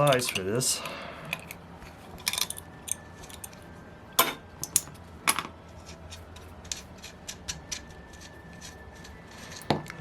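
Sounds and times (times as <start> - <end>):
metal tools clinking on a workbench: 0.0 - 0.5.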